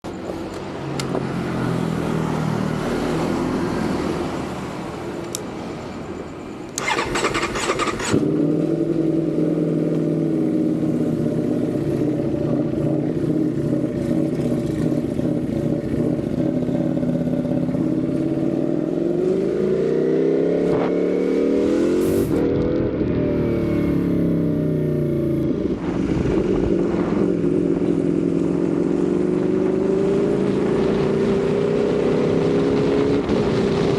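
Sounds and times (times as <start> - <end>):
motorcycle engine starting and idling: 6.7 - 18.8, 22.0 - 25.7.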